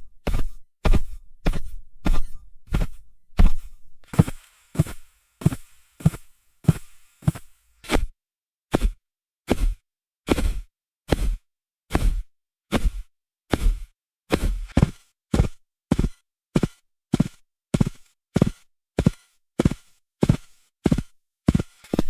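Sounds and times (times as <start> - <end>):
footsteps crunching through snow: 0.3 - 7.6.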